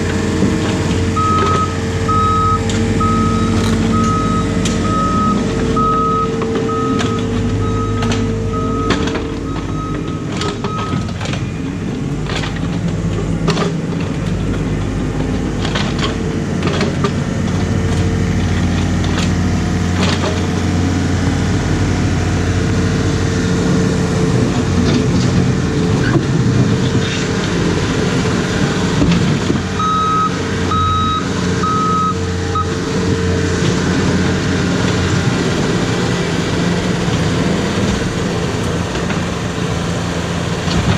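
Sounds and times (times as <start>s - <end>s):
excavator diesel engine under load: 0.0s - 40.9s
reversing alarm beeping: 1.1s - 11.2s, 29.8s - 32.8s.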